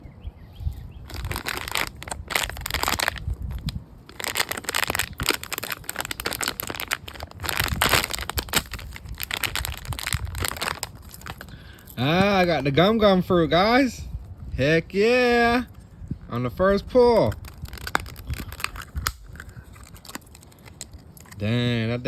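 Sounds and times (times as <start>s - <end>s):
packaging crinkling: 1.0s - 12.0s, 17.3s - 21.4s.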